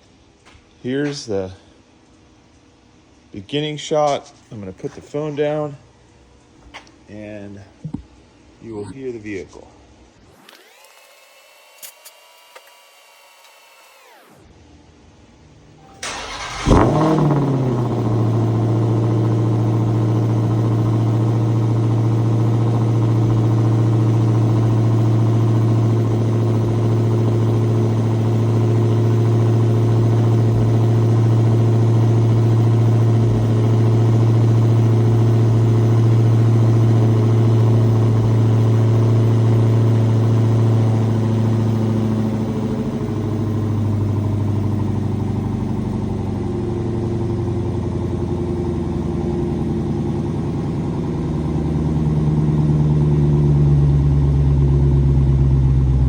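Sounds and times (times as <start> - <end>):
car engine starting and idling: 15.8 - 56.0.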